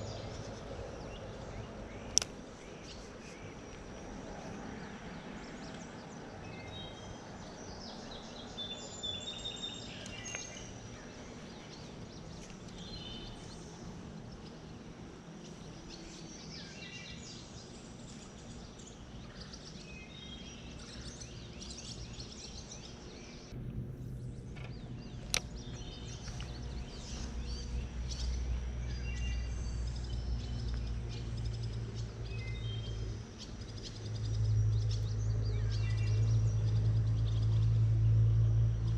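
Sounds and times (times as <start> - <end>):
birds chirping: 0.0 - 38.9
low rumble: 23.1 - 38.9.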